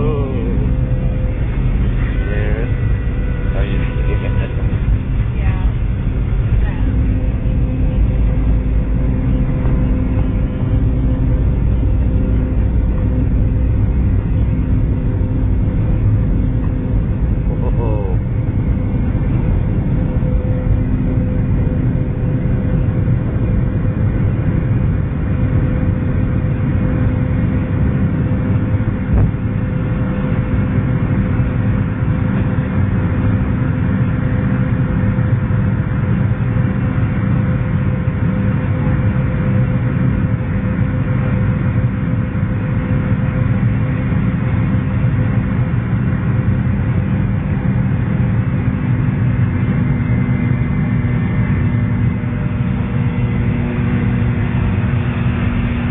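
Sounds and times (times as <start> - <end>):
airliner engine rumble in cabin: 0.0 - 55.9.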